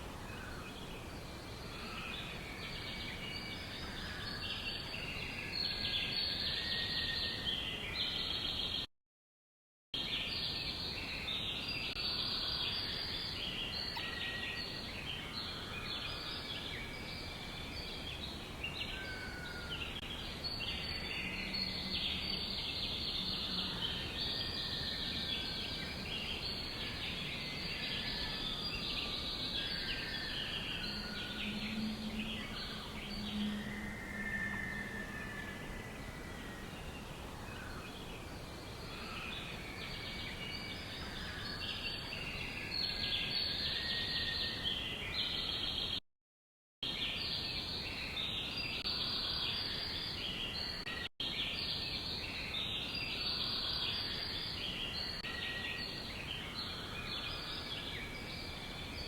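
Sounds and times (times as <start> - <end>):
small birds chirping and trilling: 0.0 - 8.9, 10.0 - 46.0, 46.8 - 59.0
whistled bird note: 29.6 - 36.7.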